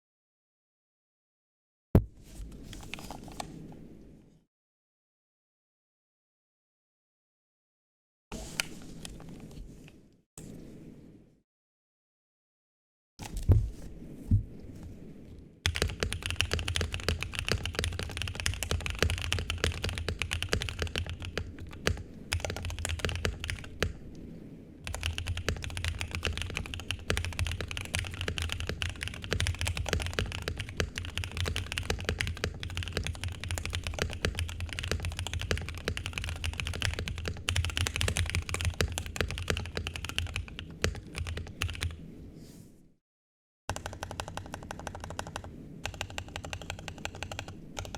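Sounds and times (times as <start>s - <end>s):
typing on mechanical keyboard: 15.7s - 24.0s, 24.9s - 42.0s, 43.7s - 47.9s.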